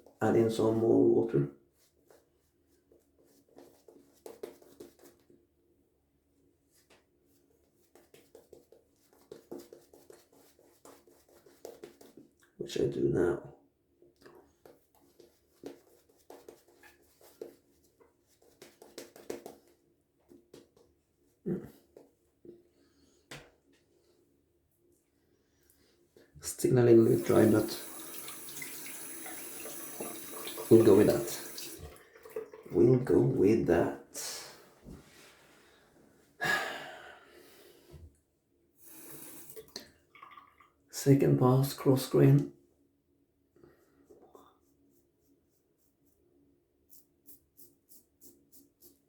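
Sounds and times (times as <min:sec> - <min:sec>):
shaving brush swishing lather: 0:15.1 - 0:19.7, 0:26.9 - 0:28.0
person breathing out: 0:36.4 - 0:38.0.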